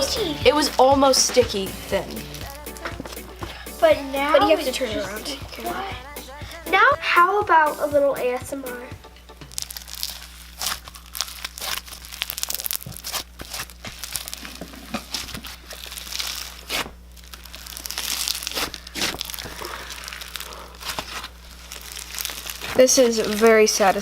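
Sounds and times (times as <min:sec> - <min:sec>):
slime squishing and crackling: 0:09.6 - 0:24.0.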